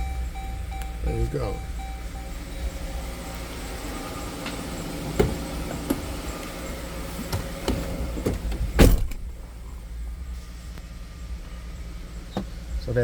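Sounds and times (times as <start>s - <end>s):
low engine hum: 0.0s - 13.0s
car door slam: 4.3s - 6.4s, 7.2s - 9.4s.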